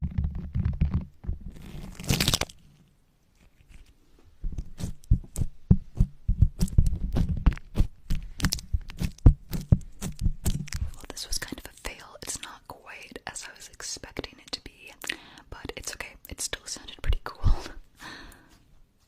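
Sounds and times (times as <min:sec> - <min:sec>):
wet mouth clicks and pops: 0:06.6 - 0:10.8.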